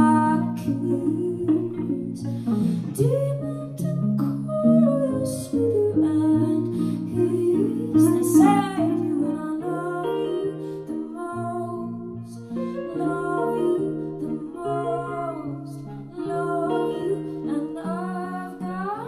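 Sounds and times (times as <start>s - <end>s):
plucked guitar: 0.0s - 19.0s
wordless singing: 4.6s - 19.0s.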